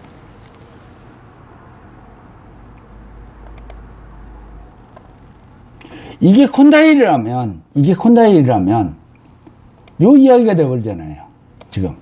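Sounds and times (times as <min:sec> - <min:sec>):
low room hum: 0:00.0 - 0:12.0
faint clicks: 0:02.8 - 0:03.8.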